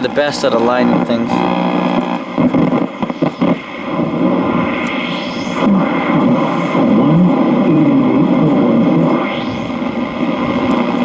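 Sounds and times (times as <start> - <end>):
faint voice on radio: 0.0 - 1.7
radio static hiss: 0.0 - 11.0.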